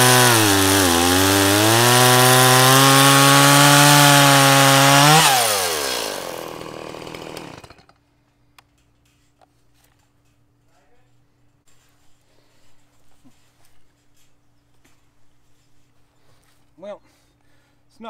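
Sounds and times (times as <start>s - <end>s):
chainsaw cutting log: 0.0s - 8.0s.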